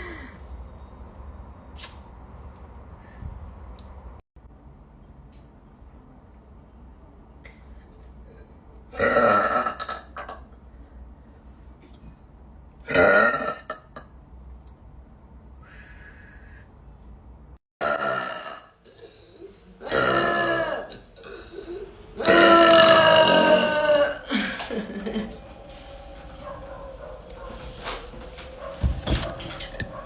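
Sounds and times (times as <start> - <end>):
woman burping: 8.3 - 10.4.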